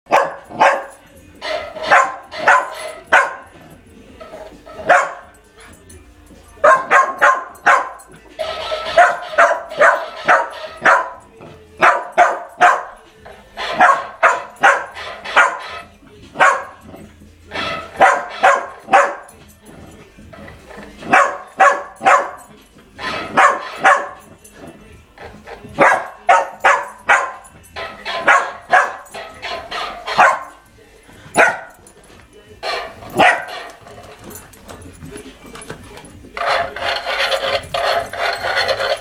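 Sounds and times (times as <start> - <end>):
dog barking: 0.1 - 3.6, 4.8 - 5.3, 6.6 - 11.2, 11.8 - 13.0, 13.6 - 15.8, 16.4 - 16.8, 17.6 - 19.3, 21.1 - 22.4, 23.0 - 24.2, 25.8 - 30.6, 31.4 - 31.8, 32.6 - 33.6.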